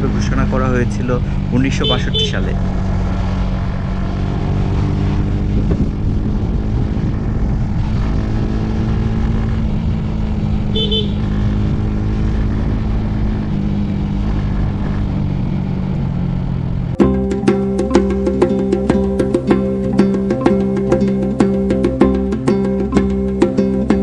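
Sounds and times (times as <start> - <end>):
motorcycle engine running: 0.0 - 24.0
road and wind noise: 0.0 - 24.0.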